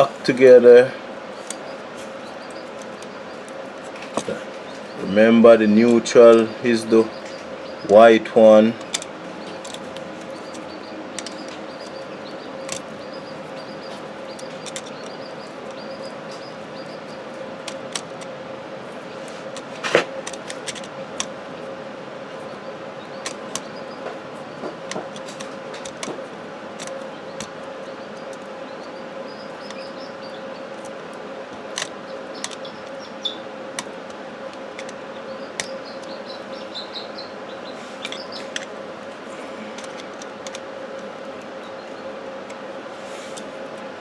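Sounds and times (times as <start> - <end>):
steady background hum: 0.0 - 44.0
small clicks and taps: 23.2 - 26.2.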